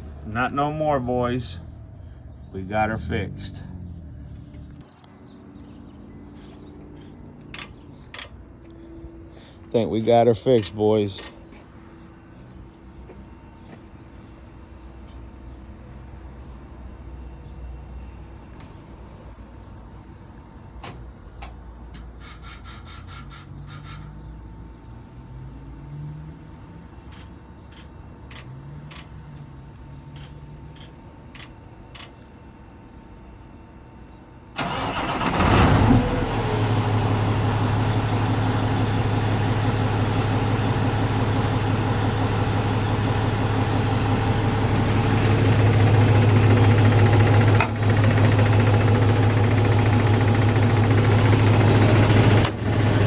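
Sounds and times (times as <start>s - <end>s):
diesel truck engine idling: 0.0s - 21.8s, 34.6s - 53.0s.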